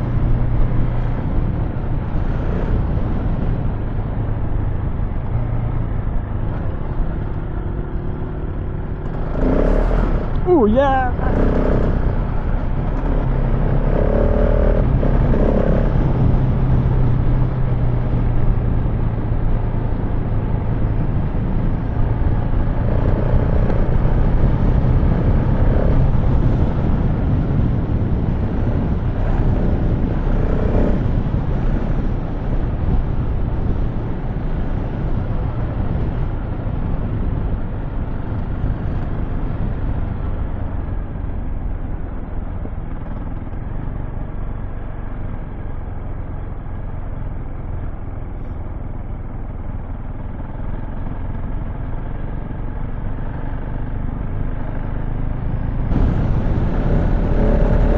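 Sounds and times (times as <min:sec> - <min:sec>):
motorcycle engine running: 0:00.0 - 0:57.9
wind rushing: 0:55.9 - 0:57.9.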